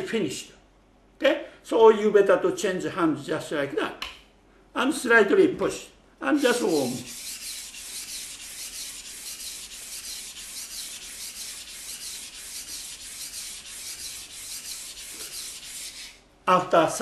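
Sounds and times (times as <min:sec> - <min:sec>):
knife rubbing on whetstone: 0:06.4 - 0:16.2.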